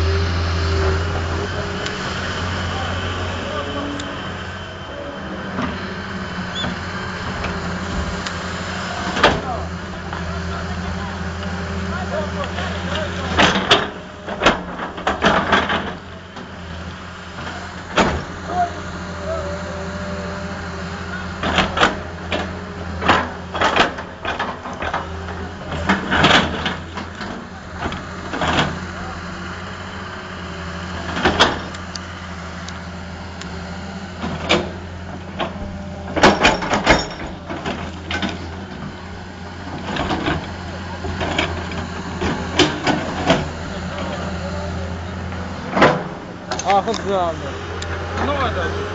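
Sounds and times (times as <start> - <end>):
construction machine engine running: 0.0 - 48.9
sharp knocks and clanks: 12.9 - 16.5, 35.4 - 39.0.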